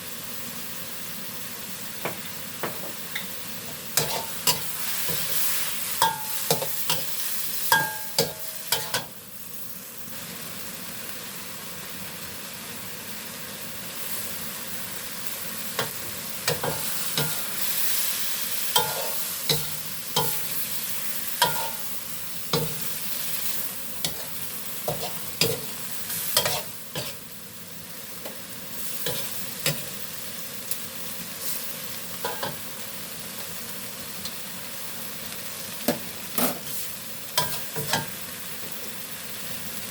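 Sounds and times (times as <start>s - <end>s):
food sizzling in a pan: 0.0s - 39.9s
spatula scraping and knocking a pan: 24.9s - 25.7s.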